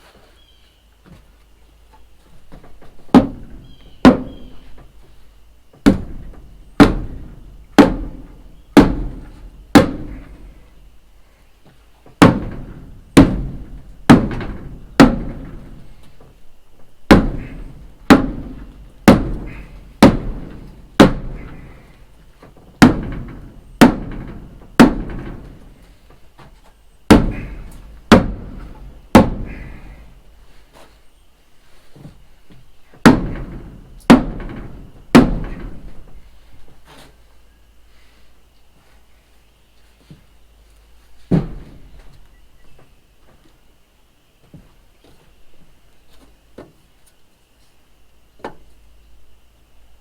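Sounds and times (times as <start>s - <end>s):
hammer blows on timber: 2.5s - 11.0s, 12.0s - 16.4s, 17.0s - 26.5s, 27.1s - 30.5s, 33.0s - 36.5s, 41.2s - 42.2s.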